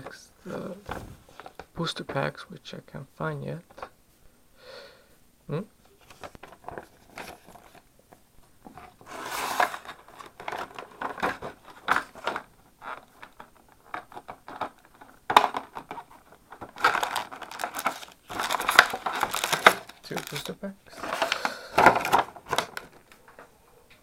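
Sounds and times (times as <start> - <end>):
box packaging crinkling: 8.8 - 23.2.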